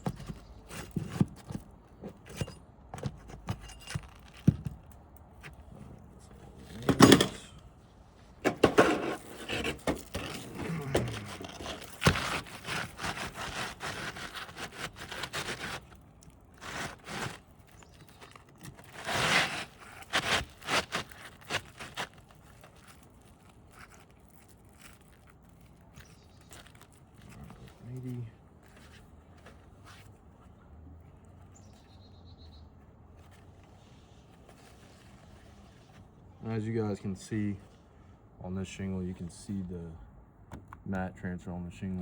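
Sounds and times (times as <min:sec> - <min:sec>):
scraping and knocking on roof: 0:00.0 - 0:05.6, 0:08.4 - 0:23.0.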